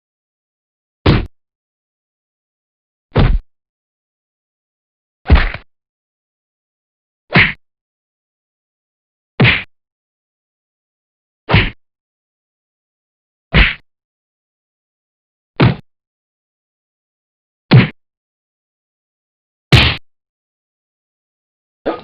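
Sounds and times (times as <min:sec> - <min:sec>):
heavy punch thuds: 0:01.1 - 0:01.3, 0:03.2 - 0:03.4, 0:17.7 - 0:18.0, 0:19.7 - 0:20.0.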